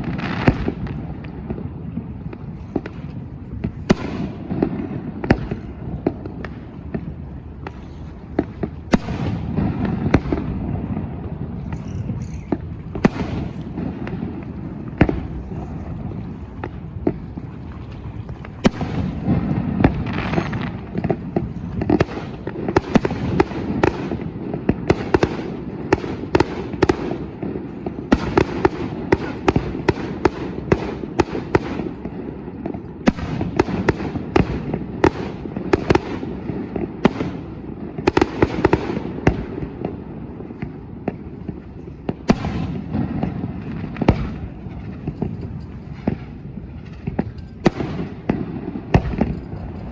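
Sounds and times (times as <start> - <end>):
continuous low rumble: 0.0 - 49.9
fireworks bangs: 0.0 - 49.9.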